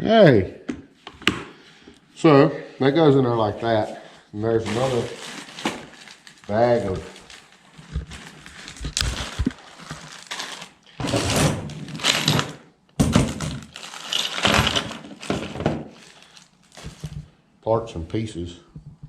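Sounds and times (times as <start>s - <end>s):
plastic bag crinkling: 4.6s - 12.6s, 13.3s - 17.3s
small parts clattering: 4.7s - 17.2s.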